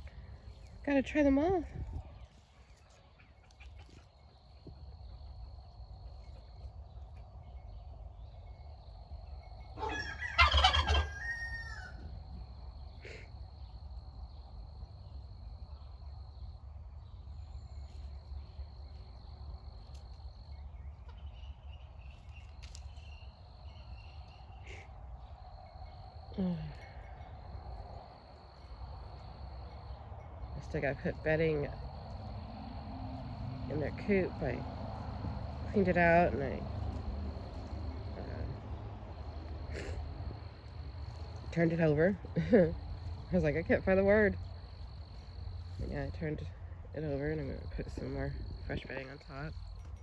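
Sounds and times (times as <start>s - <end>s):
turkey gobbling: 9.8s - 12.0s
steady low rumble: 12.0s - 50.0s.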